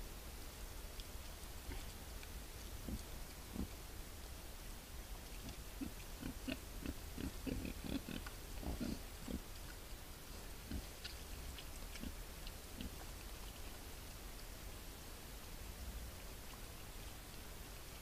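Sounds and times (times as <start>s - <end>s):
wild boar grunting: 5.4s - 9.5s.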